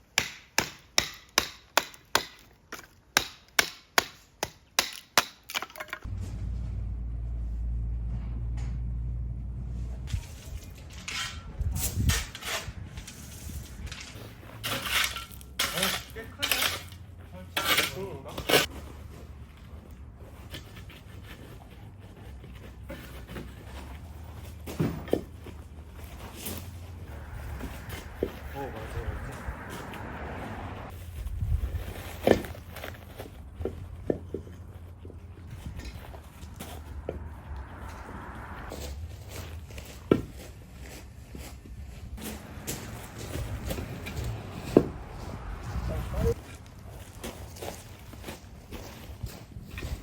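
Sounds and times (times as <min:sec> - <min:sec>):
sharp strikes on wood: 0:00.2 - 0:02.4
steady low rumble: 0:26.8 - 0:31.8, 0:35.3 - 0:39.2.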